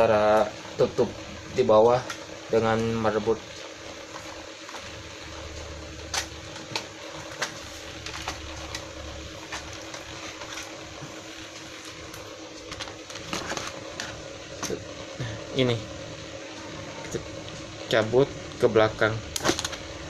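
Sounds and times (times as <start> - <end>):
steady hum: 0.0 - 20.0.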